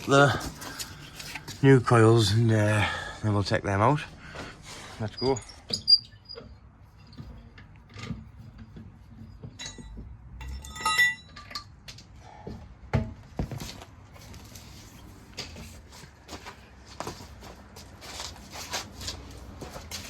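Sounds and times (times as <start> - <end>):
metal parts clinking and knocking: 5.5 - 12.1
scraping and rustling: 13.4 - 20.0.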